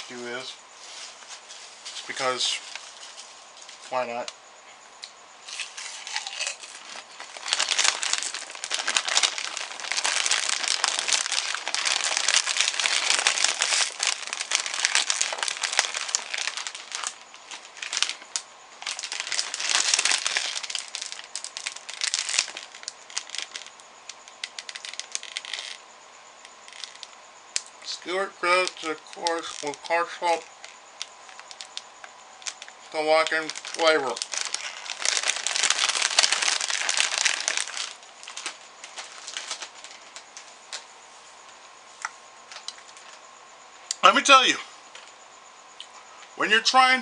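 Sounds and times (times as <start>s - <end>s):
chip bag rustling: 5.5s - 25.8s, 26.7s - 27.1s, 28.4s - 31.8s, 32.4s - 40.8s.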